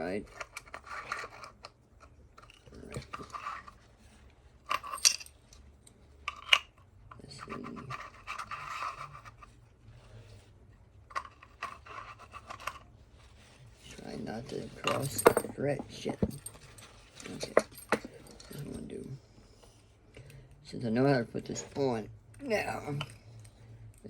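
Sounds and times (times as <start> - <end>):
metal parts clicking and clinking: 4.6 - 5.6, 6.3 - 9.0, 14.5 - 18.8.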